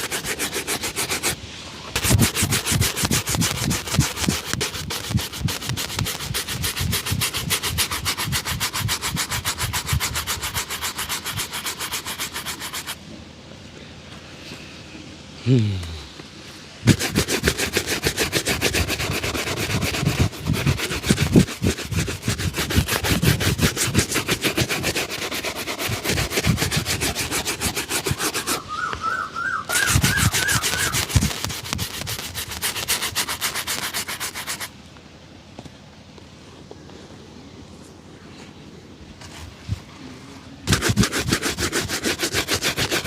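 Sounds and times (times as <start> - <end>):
shoe-shine brush strokes: 0.0 - 13.0, 16.8 - 28.7, 29.7 - 34.7, 40.7 - 43.0.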